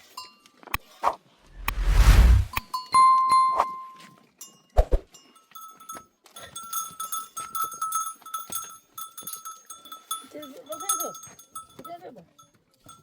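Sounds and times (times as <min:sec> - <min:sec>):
livestock bells jangling: 0:04.4 - 0:13.0.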